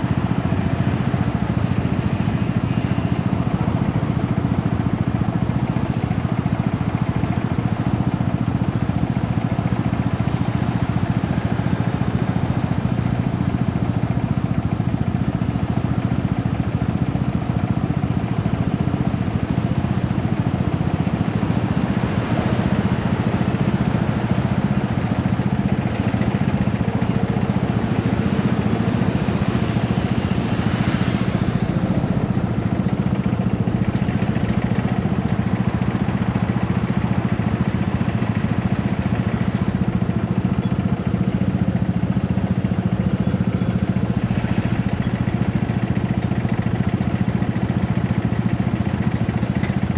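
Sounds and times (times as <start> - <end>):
motorcycle engine running: 0.0 - 49.9.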